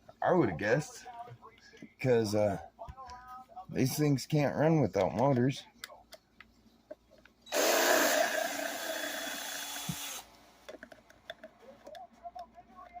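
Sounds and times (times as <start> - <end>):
light clicks and taps: 4.9 - 7.4, 10.7 - 13.0
handheld power tool running: 7.5 - 10.3.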